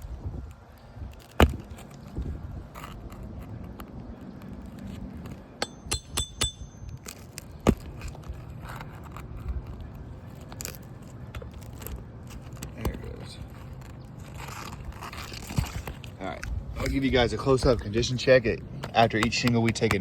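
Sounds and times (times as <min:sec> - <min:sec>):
hammer on metal clinks: 0:05.6 - 0:06.9
light taps: 0:18.8 - 0:20.0.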